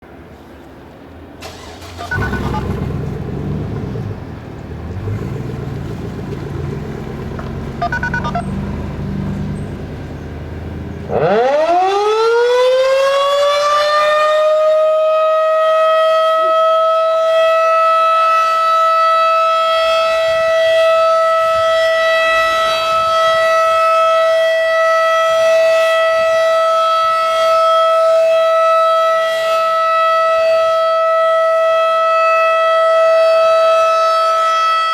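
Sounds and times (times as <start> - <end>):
warning siren winding up: 1.4 - 2.9, 7.8 - 8.5, 11.1 - 27.9
low rumbling noise: 2.1 - 11.2.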